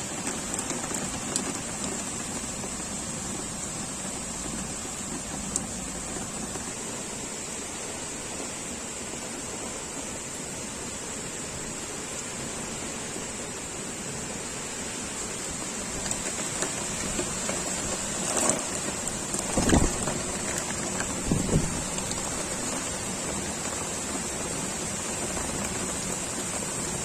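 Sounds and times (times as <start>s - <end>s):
heavy rain pouring: 0.0s - 27.0s
rain spatters and knocks: 0.0s - 27.0s.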